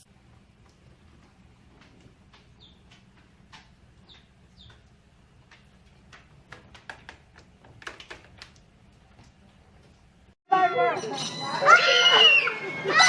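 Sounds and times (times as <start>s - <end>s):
bird chirping: 2.5s - 2.9s, 4.0s - 4.9s.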